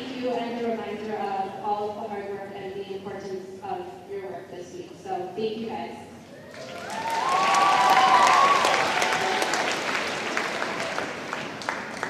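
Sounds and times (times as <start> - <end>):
large audience applauding: 6.4 - 12.0.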